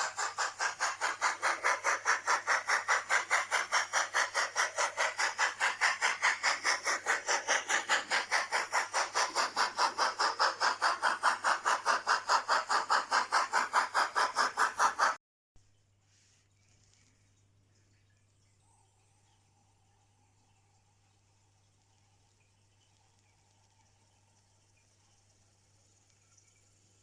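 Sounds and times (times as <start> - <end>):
model steam locomotive chuffing: 0.0 - 15.2.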